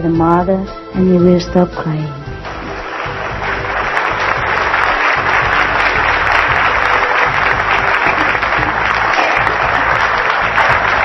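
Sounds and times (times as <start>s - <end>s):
audience applauding: 2.4s - 11.0s.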